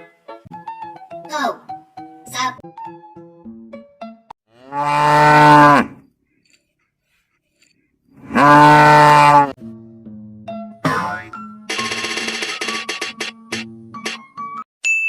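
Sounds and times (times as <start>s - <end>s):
cow mooing: 4.5s - 6.0s, 8.2s - 9.6s.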